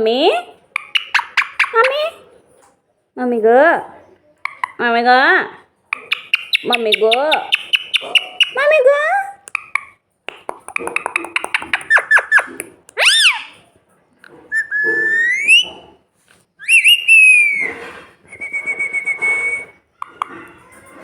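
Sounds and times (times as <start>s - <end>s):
parrot chirping: 0.7s - 2.2s, 4.4s - 4.8s, 5.9s - 13.7s, 14.4s - 15.8s, 16.6s - 21.0s
parrot whistling: 6.0s - 8.6s, 11.0s - 13.6s, 14.5s - 15.8s, 16.6s - 20.5s.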